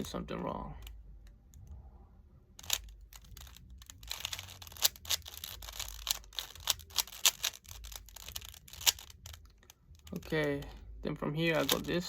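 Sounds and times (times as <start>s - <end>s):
puzzle cube clicking as twisted: 2.6s - 10.6s, 11.6s - 12.0s.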